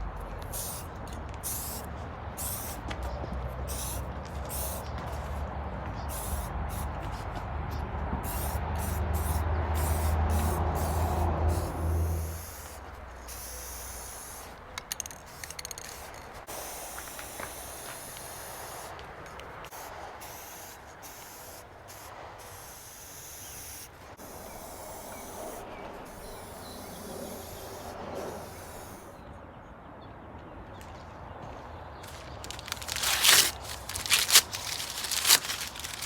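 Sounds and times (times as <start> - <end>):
spray can hissing: 0.4 - 2.8, 3.7 - 4.9, 6.1 - 7.0, 8.2 - 19.0, 19.7 - 25.4, 26.1 - 29.0, 32.4 - 36.0.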